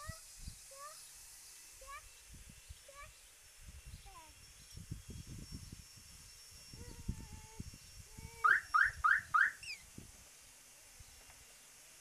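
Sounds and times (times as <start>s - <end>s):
faint steady whine: 0.0s - 12.0s
car alarm chirping: 8.5s - 9.8s.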